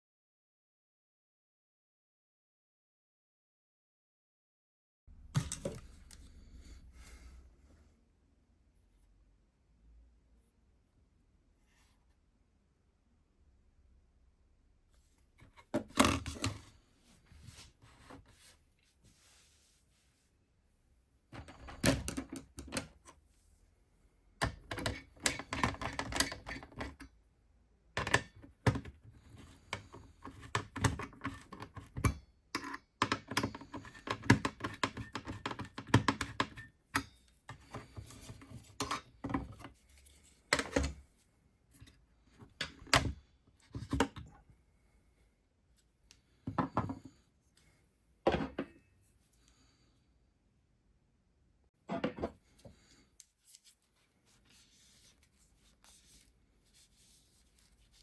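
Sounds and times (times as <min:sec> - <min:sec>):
computer parts clicking and rattling: 0:05.3 - 0:06.3, 0:24.5 - 0:27.0.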